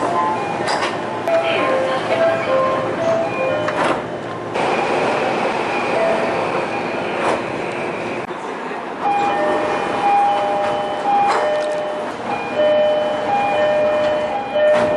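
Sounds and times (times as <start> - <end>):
two-tone door chime: 2.5 - 3.9, 9.0 - 14.9.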